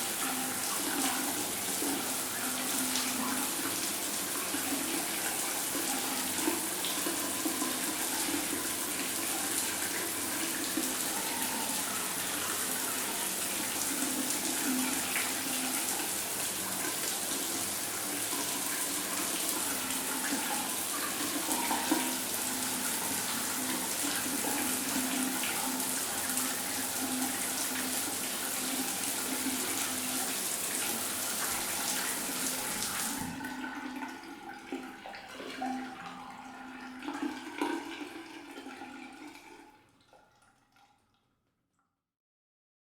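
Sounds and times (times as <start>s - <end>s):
shower water spraying: 0.0s - 33.3s
water dripping and trickling: 0.0s - 41.9s.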